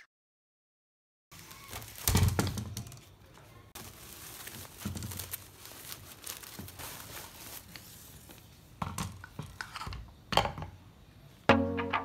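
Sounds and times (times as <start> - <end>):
crinkling handling noise: 1.3 - 10.2.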